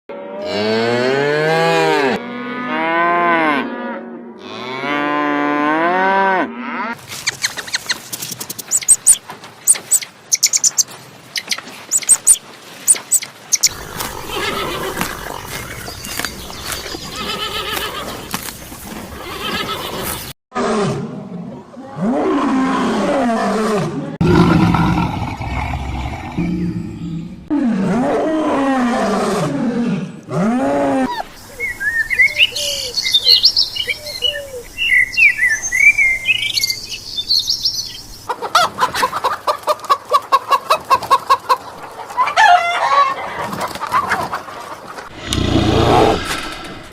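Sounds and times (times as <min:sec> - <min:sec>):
rising and falling animal calls: 0:08.6 - 0:18.3, 0:41.3 - 0:46.9.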